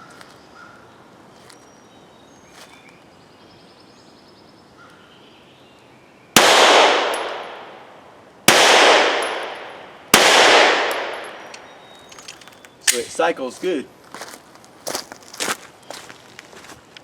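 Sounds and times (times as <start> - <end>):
pistol shots with echo: 6.4 - 11.9.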